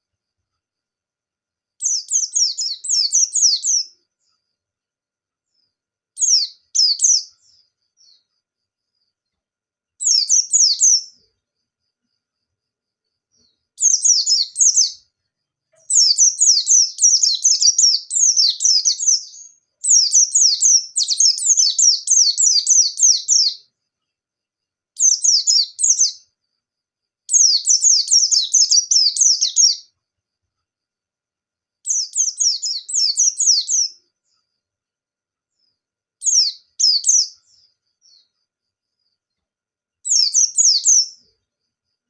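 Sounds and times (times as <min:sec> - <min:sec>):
white-eye bird singing: 0:01.8 - 0:04.6, 0:05.4 - 0:09.3, 0:10.0 - 0:11.4, 0:13.0 - 0:26.6, 0:27.2 - 0:30.1, 0:31.8 - 0:34.5, 0:35.5 - 0:39.3, 0:40.0 - 0:41.8.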